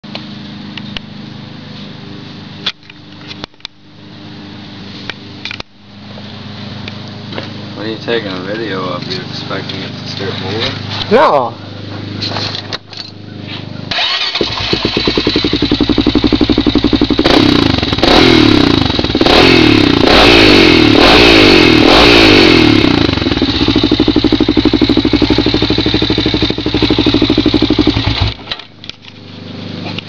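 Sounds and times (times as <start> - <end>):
quad bike engine revving and idling: 13.1 - 30.0.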